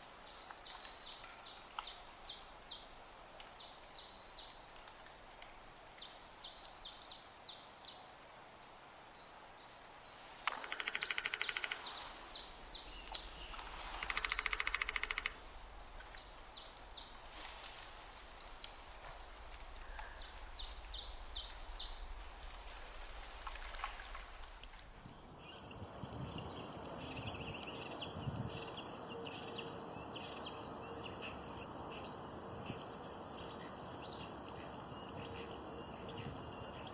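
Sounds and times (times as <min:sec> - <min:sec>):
songbirds singing: 0:00.0 - 0:04.7, 0:05.6 - 0:08.2, 0:08.8 - 0:22.8.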